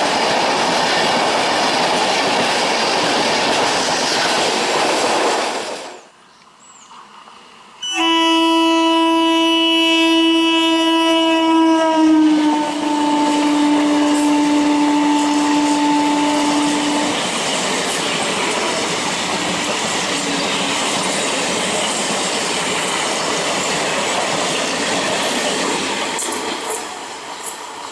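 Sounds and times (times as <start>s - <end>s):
train carriages rushing and clattering: 0.0s - 6.0s, 12.5s - 27.9s
train horn blast: 7.8s - 17.3s.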